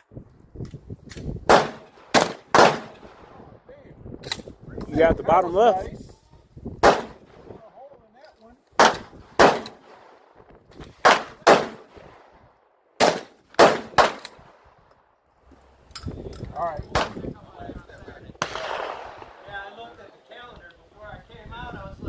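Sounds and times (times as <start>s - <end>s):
gunshots: 1.4s - 3.4s, 6.8s - 7.5s, 8.8s - 10.3s, 10.9s - 12.4s, 13.0s - 14.6s, 18.4s - 19.7s.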